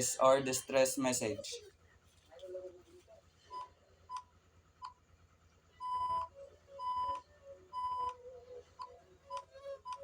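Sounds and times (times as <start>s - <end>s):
morse code beeps: 5.8s - 7.2s, 7.8s - 8.2s.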